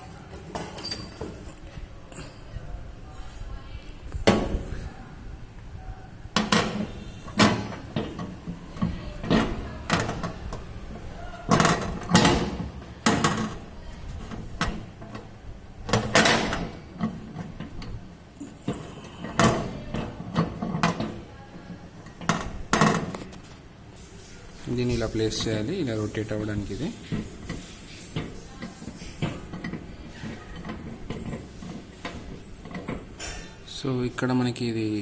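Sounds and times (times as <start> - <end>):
knocks and clatter of microwave parts: 6.4 - 10.6, 11.5 - 18.0, 22.0 - 23.3.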